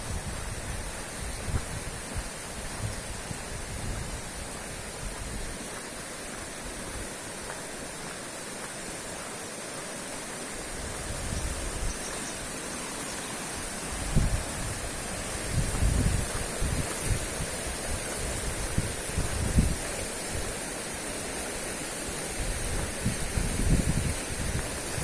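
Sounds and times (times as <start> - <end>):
wind buffeting microphone: 0.0 - 5.8, 13.6 - 20.7, 22.1 - 25.0
river rushing: 0.0 - 25.0.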